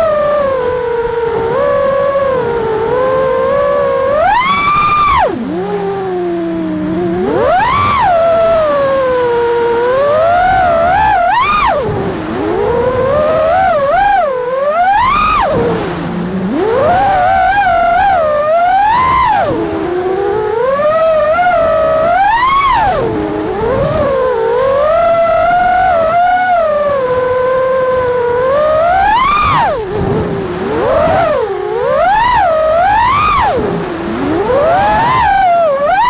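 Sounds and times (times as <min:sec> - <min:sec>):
quadcopter motors whining: 0:00.0 - 0:36.0.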